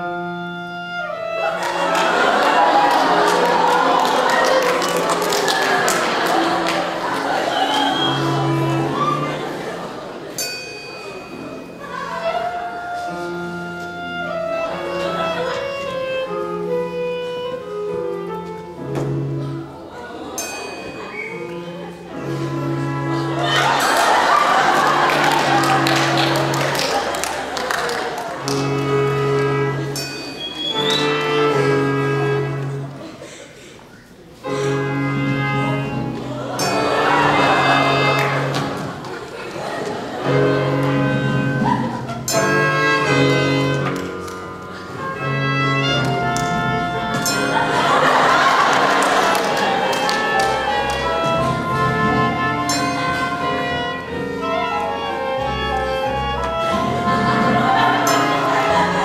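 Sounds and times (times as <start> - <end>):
orchestra holding long chords: 0.0 - 33.4, 34.4 - 59.0.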